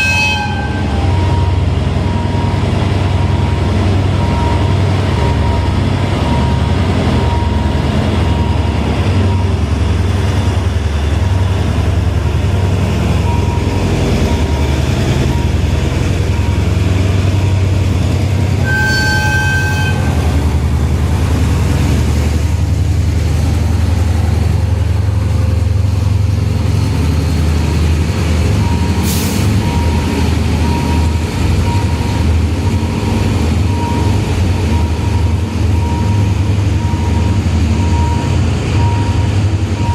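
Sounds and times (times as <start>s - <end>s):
car horn toot: 0.0s - 0.8s, 18.6s - 20.1s
diesel engines rumbling in traffic: 0.0s - 39.9s.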